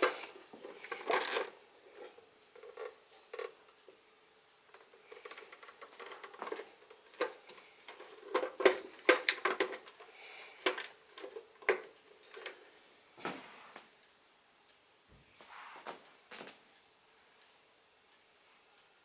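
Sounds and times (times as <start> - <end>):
faint steady hum: 0.0 - 19.0
table fan clicks and knocks: 4.7 - 12.6.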